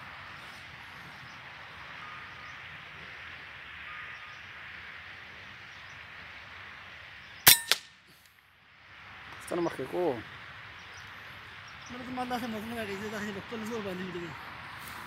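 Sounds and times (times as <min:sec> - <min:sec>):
outdoor background hiss: 0:00.0 - 0:15.0
airgun shot: 0:07.5 - 0:07.9.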